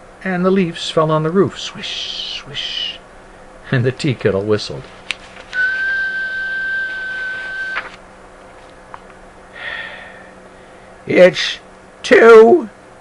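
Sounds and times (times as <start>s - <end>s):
high-pitched whistle: 5.6s - 7.9s.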